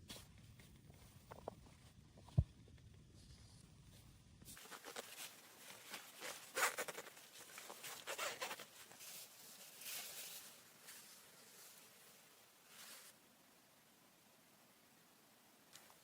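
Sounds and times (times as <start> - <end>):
scraping rustling strokes: 4.5 - 13.2.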